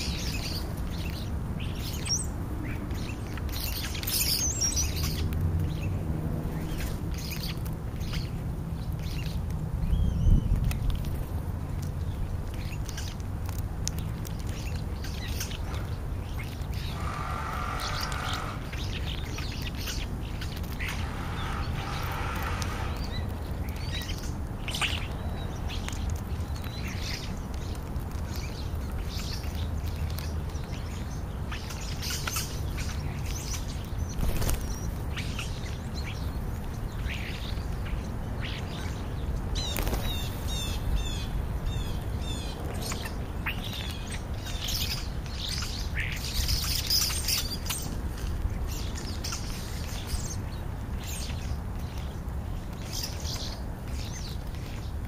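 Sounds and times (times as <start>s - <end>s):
buzzy bird calls: 0.0s - 8.4s, 14.5s - 26.0s, 26.6s - 52.2s
starlings chirping and clicking: 0.0s - 55.0s
low rumble: 16.6s - 24.1s.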